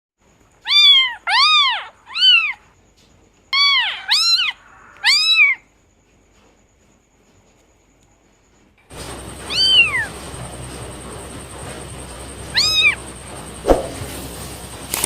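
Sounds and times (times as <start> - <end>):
cat meowing: 0.6 - 2.7, 3.5 - 5.7.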